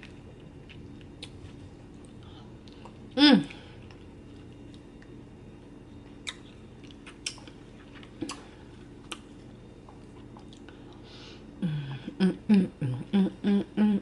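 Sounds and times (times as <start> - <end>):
low steady hum: 0.0 - 14.0
wet mouth smacks and clicks: 6.2 - 7.5, 8.2 - 8.4.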